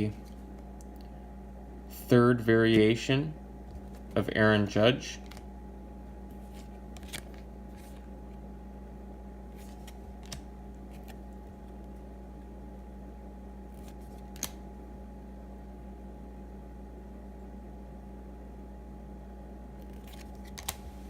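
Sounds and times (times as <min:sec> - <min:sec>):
steady electrical hum: 0:00.0 - 0:21.0
cards clicking and rustling: 0:05.0 - 0:05.5, 0:06.3 - 0:08.1, 0:09.5 - 0:12.0, 0:13.7 - 0:14.6, 0:19.8 - 0:21.0.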